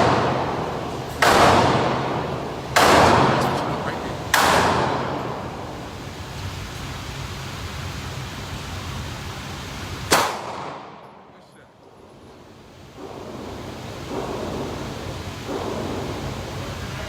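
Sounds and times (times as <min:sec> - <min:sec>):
gunshot: 0:00.0 - 0:02.2, 0:02.8 - 0:03.7, 0:04.3 - 0:05.3, 0:10.1 - 0:11.0
steady background noise: 0:00.0 - 0:17.0.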